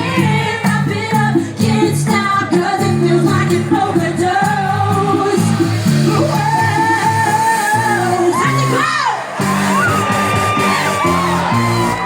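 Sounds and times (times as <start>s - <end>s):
pulsing synth bass: 2.8s - 8.8s, 9.4s - 12.0s.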